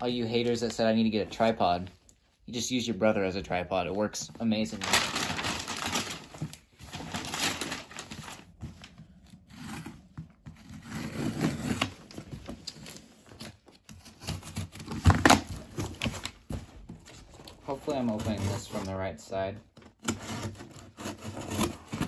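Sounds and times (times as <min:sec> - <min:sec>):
paper and tape tearing: 0:04.7 - 0:08.4.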